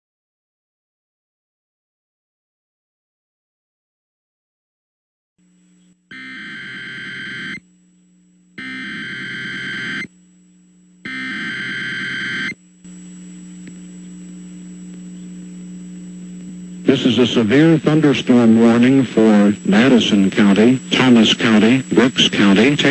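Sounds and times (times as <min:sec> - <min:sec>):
steady low hum: 0:05.4 - 0:22.9
harsh digital data tones: 0:06.1 - 0:07.6, 0:08.6 - 0:10.1, 0:11.1 - 0:12.6.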